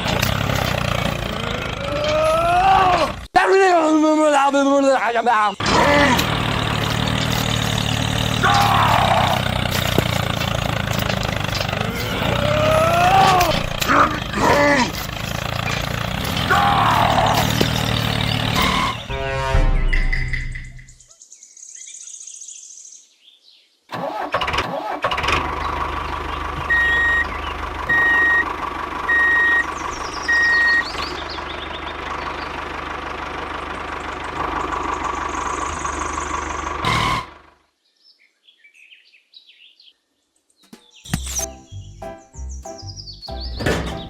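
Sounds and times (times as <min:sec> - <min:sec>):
small engine running: 0:05.6 - 0:19.1.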